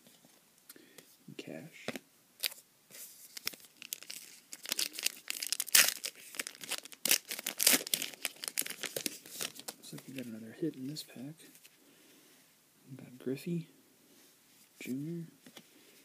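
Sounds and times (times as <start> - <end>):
foil wrapper tearing and crinkling: 3.3 - 9.8.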